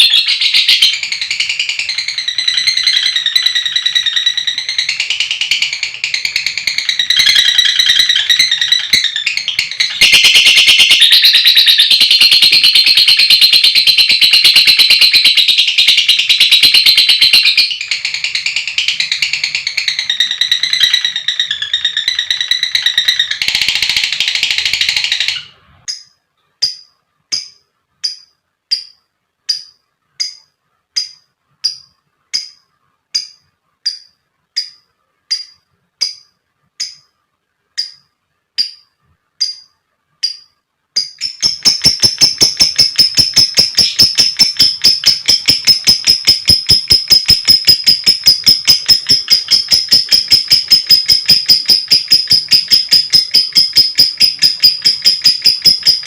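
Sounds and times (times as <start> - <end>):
sharp bird chirps: 0.0 - 37.2, 37.8 - 56.0
lovebirds chattering trill: 41.2 - 56.0.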